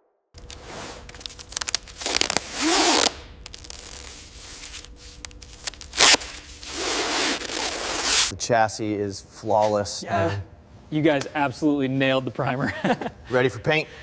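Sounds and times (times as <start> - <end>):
tool scraping and rubbing: 3.7 - 8.3.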